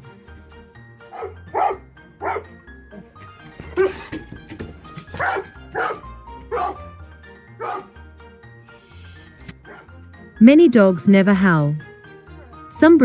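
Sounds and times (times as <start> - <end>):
background music: 0.0 - 13.0
dog barking: 1.1 - 2.4, 5.0 - 6.9, 7.6 - 7.9, 9.6 - 9.9.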